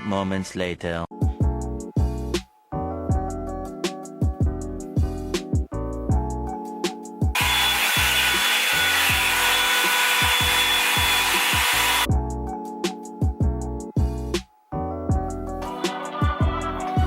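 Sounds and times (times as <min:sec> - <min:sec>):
background music: 0:00.0 - 0:17.0
hair dryer brush blowing air: 0:07.4 - 0:12.1.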